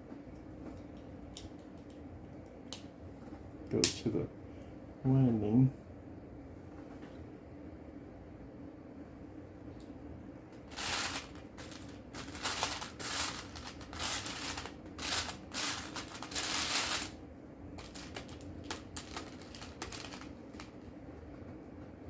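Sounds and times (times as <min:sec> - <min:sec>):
plastic bricks rattling and clicking: 0:10.7 - 0:17.1, 0:17.8 - 0:20.7.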